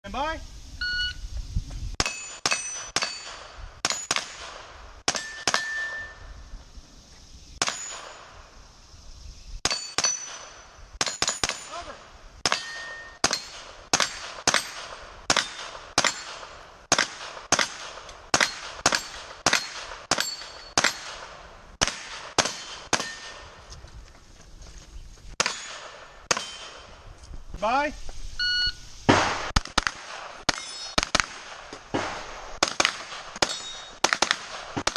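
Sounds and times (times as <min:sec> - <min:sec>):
gunshots: 0:02.0 - 0:06.0, 0:09.6 - 0:23.6, 0:25.4 - 0:27.0, 0:29.1 - 0:34.9
steel targets ringing: 0:05.1 - 0:06.3, 0:09.7 - 0:11.9, 0:12.5 - 0:13.6, 0:18.4 - 0:21.0, 0:25.4 - 0:26.8, 0:30.5 - 0:31.0, 0:33.4 - 0:34.0.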